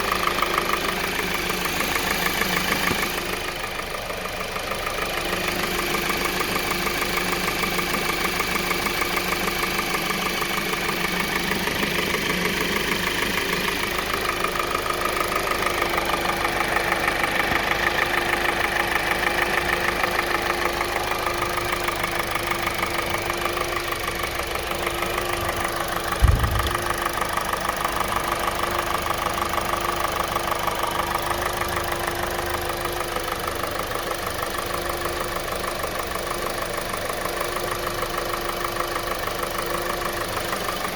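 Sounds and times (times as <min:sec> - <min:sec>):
car engine idling with knocking: 0:00.0 - 0:40.9
low thump: 0:26.2 - 0:27.1.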